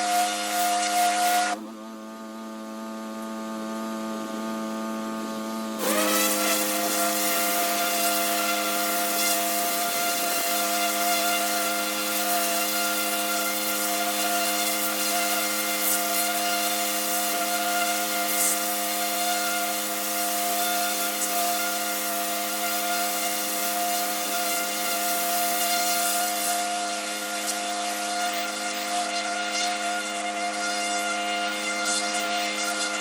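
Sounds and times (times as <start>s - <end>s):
pressure washer droning: 0.0s - 2.0s, 5.8s - 33.0s
water jet spraying on brick: 5.8s - 29.8s.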